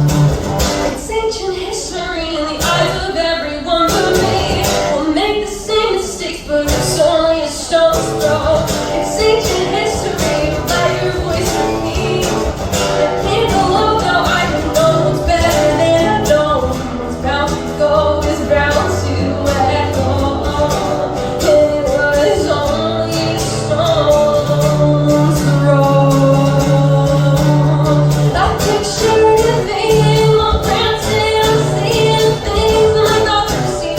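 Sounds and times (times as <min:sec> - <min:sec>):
person singing: 0:00.9 - 0:33.9
live band playing: 0:08.0 - 0:33.9.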